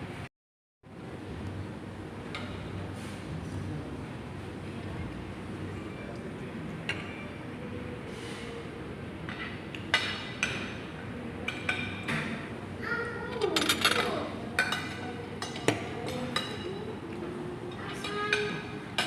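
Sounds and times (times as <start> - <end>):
cutlery and dishes clinking: 13.4 - 16.8.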